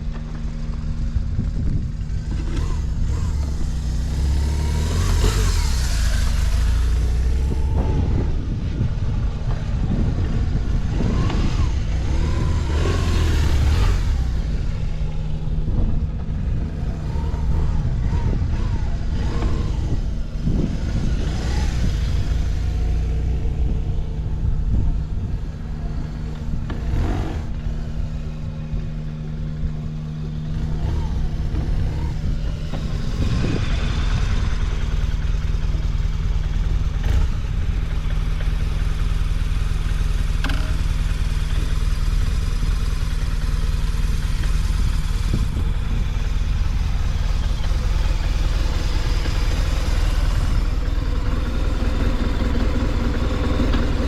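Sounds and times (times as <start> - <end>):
motorcycle engine idling and revving: 0.0 - 54.0.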